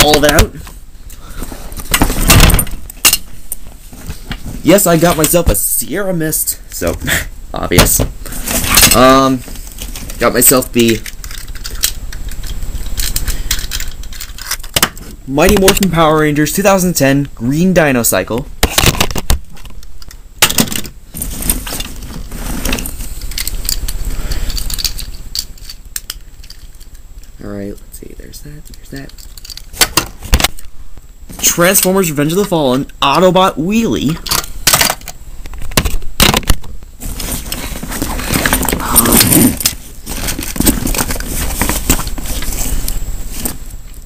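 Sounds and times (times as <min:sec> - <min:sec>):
plastic bag rustling and crinkling: 0:37.0 - 0:43.7.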